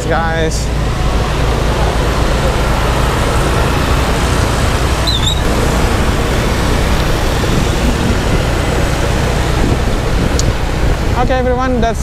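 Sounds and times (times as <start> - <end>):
road traffic rumbling: 0.0 - 12.0
brief high squeak: 5.0 - 5.5.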